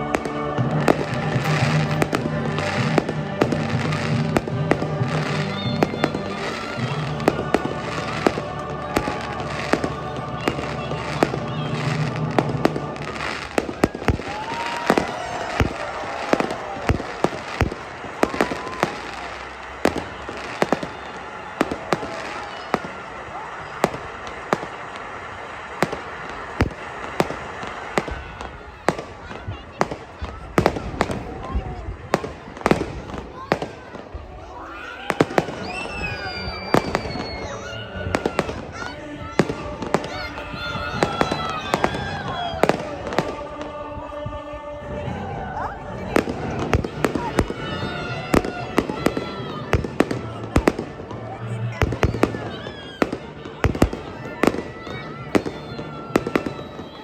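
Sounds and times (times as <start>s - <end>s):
music playing: 0.0s - 28.4s, 36.2s - 52.4s.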